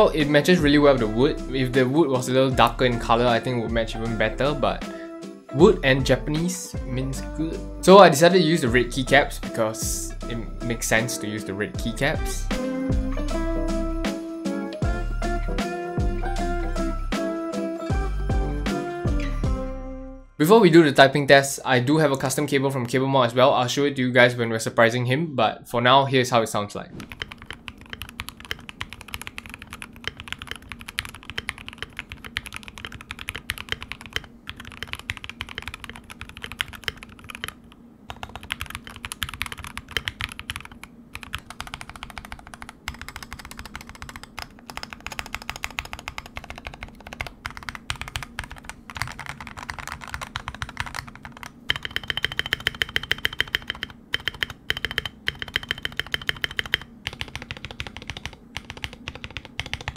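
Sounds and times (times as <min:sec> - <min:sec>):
keyboard keystrokes clacking: 0:27.0 - 0:59.9.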